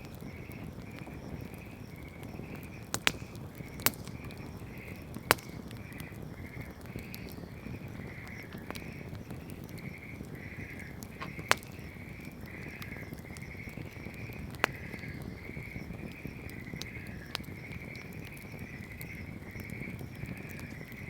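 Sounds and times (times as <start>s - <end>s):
bonfire crackling: 0.0s - 21.0s
wood popping: 2.9s - 15.2s.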